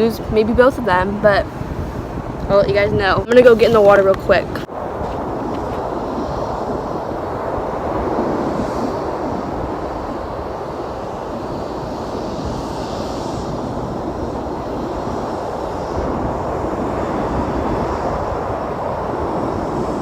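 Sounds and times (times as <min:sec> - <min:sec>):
wind and surf rushing: 0:00.0 - 0:20.0
wind buffeting microphone: 0:00.0 - 0:20.0.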